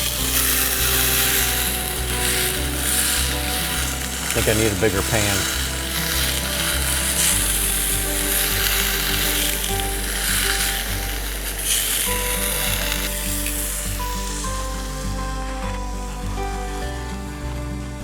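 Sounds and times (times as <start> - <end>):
food sizzling in a pan: 0.0 - 16.5
background music: 0.0 - 18.0.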